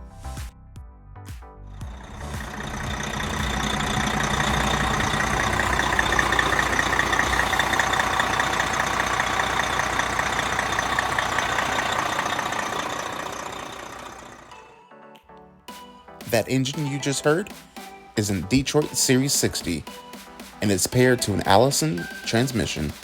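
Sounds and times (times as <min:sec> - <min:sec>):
diesel engine idling: 0:01.7 - 0:14.6.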